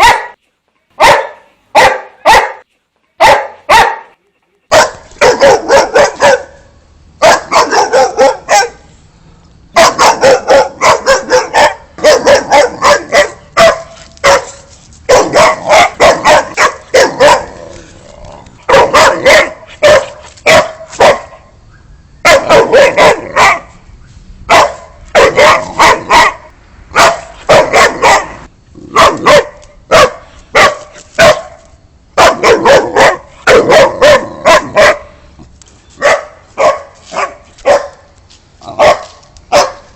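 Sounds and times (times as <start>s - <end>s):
dog barking loudly: 0.0s - 0.4s, 1.0s - 2.6s, 3.2s - 8.8s, 9.8s - 17.6s, 18.6s - 21.5s, 22.2s - 23.7s, 24.5s - 31.6s, 32.2s - 35.2s, 36.0s - 38.1s, 38.7s - 39.9s.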